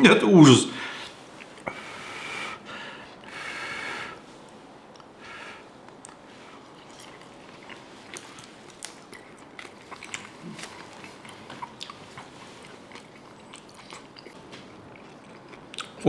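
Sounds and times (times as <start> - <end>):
person chewing: 4.4 - 16.0.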